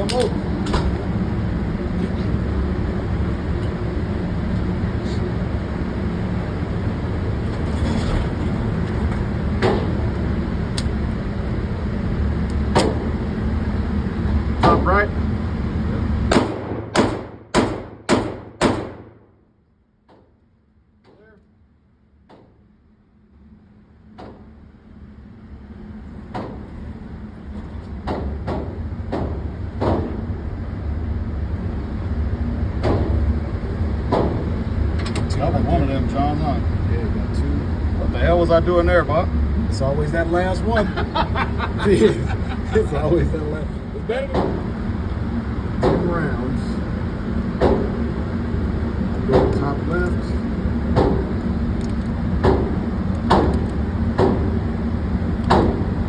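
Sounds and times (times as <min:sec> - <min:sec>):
air handling rumble: 0:00.0 - 0:19.2, 0:23.3 - 0:56.0
gunshot: 0:16.3 - 0:19.2.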